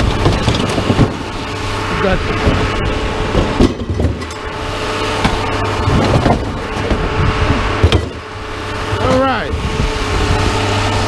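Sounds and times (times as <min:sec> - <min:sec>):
short knocks and clanks: 0:00.0 - 0:01.3, 0:02.3 - 0:04.5, 0:05.2 - 0:07.2, 0:07.8 - 0:08.2
engine running: 0:00.0 - 0:11.0.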